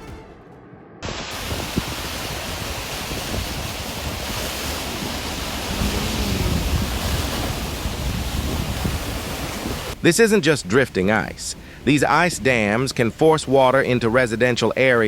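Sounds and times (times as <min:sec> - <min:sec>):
fast-moving water rushing: 0:01.0 - 0:15.0
wind buffeting microphone: 0:01.3 - 0:10.0.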